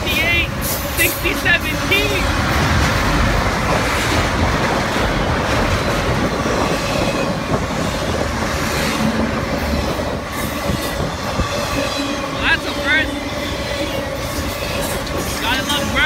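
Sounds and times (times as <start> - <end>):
freight train cars rolling past: 0.0 - 16.0.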